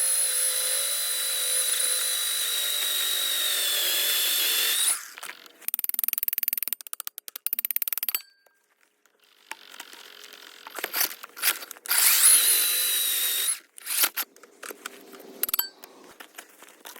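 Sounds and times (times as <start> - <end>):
drill motor whine: 0.0 - 5.2, 11.9 - 14.2
drill clutch clicking: 0.0 - 8.2, 9.5 - 14.2.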